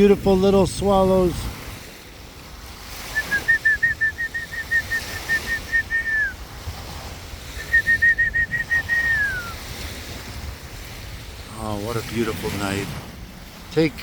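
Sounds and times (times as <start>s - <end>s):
small lake waves washing: 0.0s - 14.0s
bird calling high notes: 3.2s - 6.4s.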